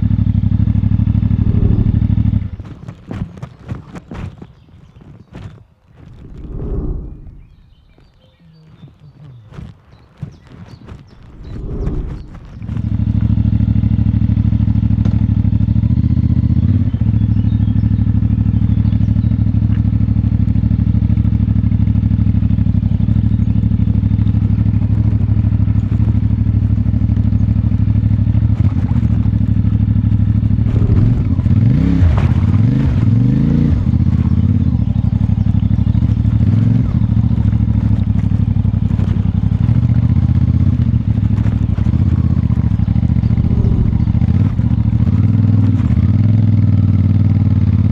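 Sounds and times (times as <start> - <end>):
motorcycle engine running: 0.0 - 5.0, 6.2 - 47.9.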